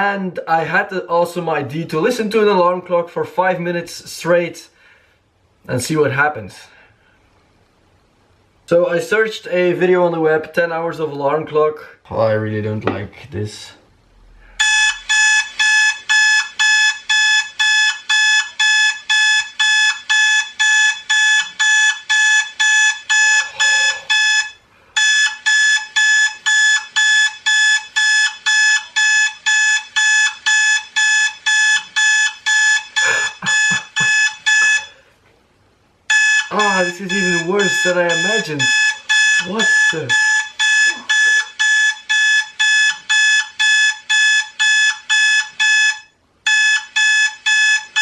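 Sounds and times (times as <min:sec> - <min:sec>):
alarm clock beeping: 0:14.6 - 0:35.0, 0:36.1 - 0:48.0.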